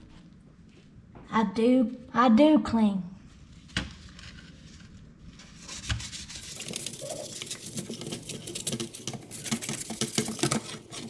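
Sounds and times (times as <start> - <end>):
toothbrush scrubbing: 5.6 - 11.0.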